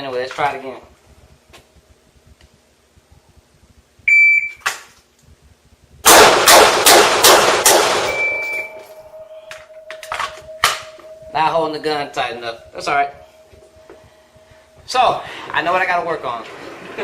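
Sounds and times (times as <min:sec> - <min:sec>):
shot timer beep: 0:04.1 - 0:04.6, 0:08.1 - 0:13.2
handgun shots: 0:06.1 - 0:08.3
ringing after gunshots: 0:06.1 - 0:13.2.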